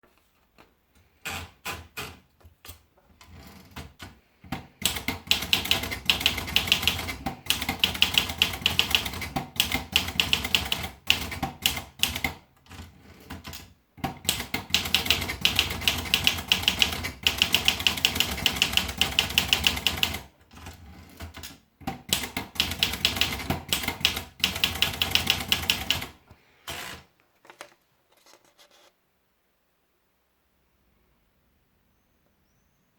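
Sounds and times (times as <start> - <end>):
typewriter keystrokes: 3.7 - 27.0.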